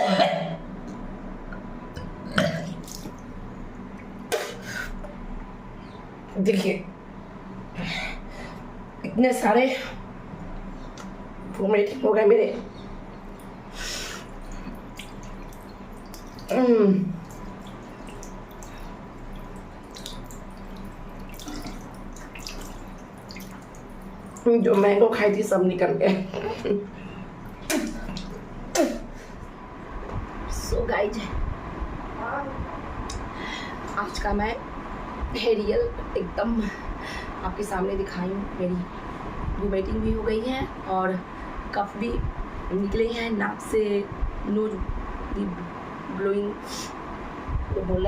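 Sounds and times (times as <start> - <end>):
woman retching and coughing: 0.0 - 0.6, 2.3 - 2.8, 27.7 - 29.2
sharp water drops: 14.4 - 16.6, 17.2 - 24.5
water trickling into sink: 14.4 - 25.0.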